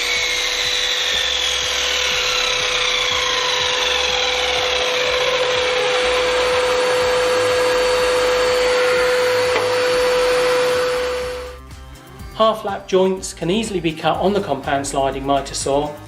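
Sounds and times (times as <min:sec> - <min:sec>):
mitre saw cutting timber: 0:00.0 - 0:11.6.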